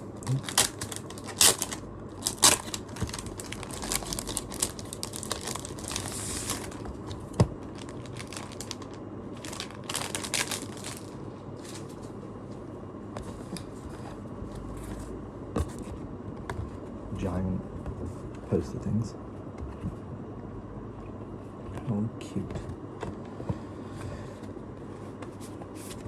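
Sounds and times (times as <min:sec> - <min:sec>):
packaging crinkling and rustling: 0:00.2 - 0:12.1.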